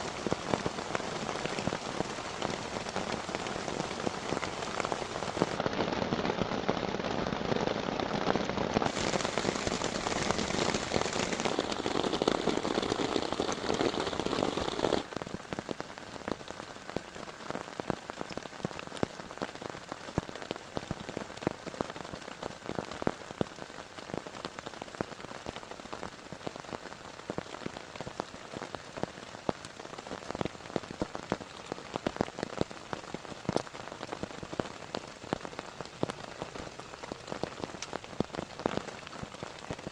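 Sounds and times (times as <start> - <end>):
heavy rain falling: 0.0 - 39.9
raindrops ticking: 0.0 - 39.9.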